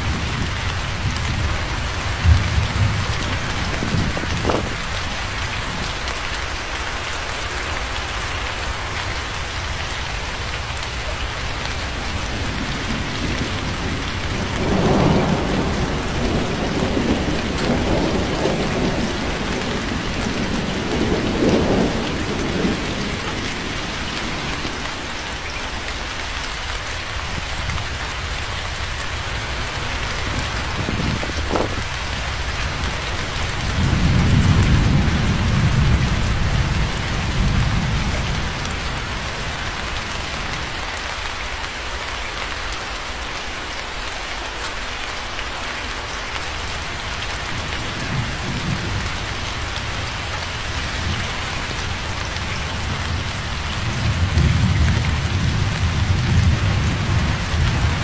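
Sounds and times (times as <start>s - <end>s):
rolling thunder: 0.0s - 5.9s, 11.0s - 26.3s, 27.2s - 40.8s, 47.4s - 58.0s
steady rain falling: 0.0s - 58.0s.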